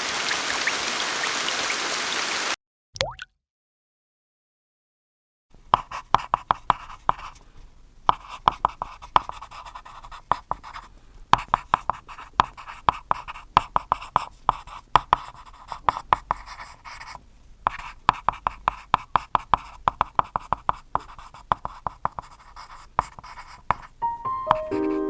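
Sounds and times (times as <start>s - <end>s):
pen scratching on paper: 5.7s - 7.4s, 8.1s - 24.0s.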